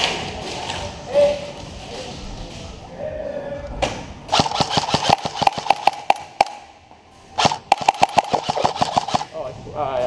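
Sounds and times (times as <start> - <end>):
airsoft gun shots: 4.3 - 6.6, 7.4 - 9.3.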